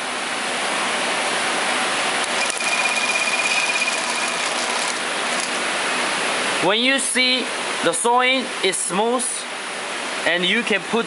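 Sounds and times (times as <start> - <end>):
thin high whine: 2.2 - 5.6
sewing machine whirring: 2.3 - 5.6.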